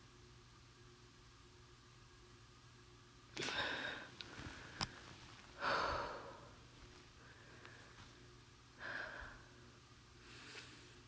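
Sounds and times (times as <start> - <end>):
person breathing heavily: 3.4 - 4.9, 5.6 - 6.6, 7.2 - 8.1, 8.8 - 9.6.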